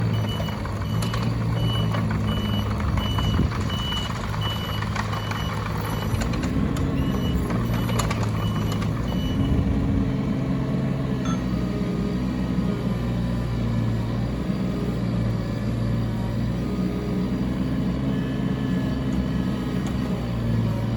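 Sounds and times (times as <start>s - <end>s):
diesel engine running: 0.0s - 20.9s
reversing alarm beeping: 7.0s - 9.6s, 11.2s - 11.5s.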